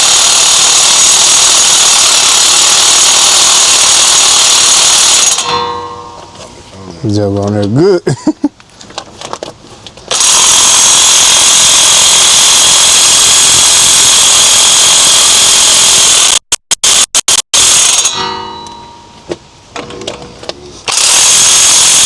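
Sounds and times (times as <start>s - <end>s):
impact wrench hammering: 0.0s - 6.4s, 16.8s - 19.4s.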